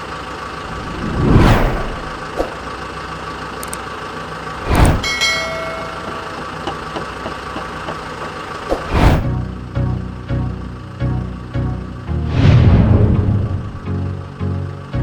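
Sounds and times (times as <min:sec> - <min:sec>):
vehicle engine running: 0:00.0 - 0:15.0
loud rushing burst: 0:00.6 - 0:02.6, 0:04.6 - 0:05.1, 0:08.7 - 0:09.3, 0:12.2 - 0:14.2
small knocks: 0:05.8 - 0:08.3.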